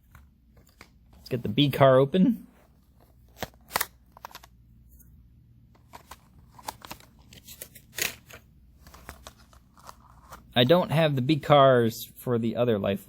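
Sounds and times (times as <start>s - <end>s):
plastic and cardboard packaging rustling: 5.8s - 10.6s.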